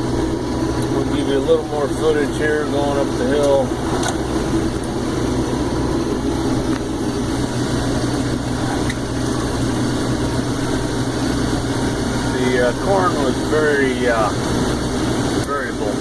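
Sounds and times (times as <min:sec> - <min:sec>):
combine harvester engine hum: 0:00.0 - 0:16.0.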